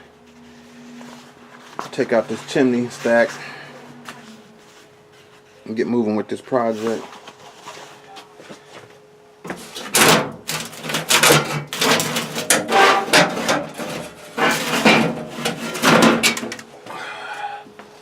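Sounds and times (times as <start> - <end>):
metal pipe scraping and rattling: 9.5 - 16.6.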